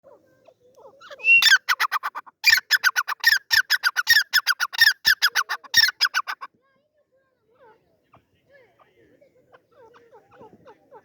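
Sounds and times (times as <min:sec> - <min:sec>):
partridge calling harsh notes: 0:01.1 - 0:06.5.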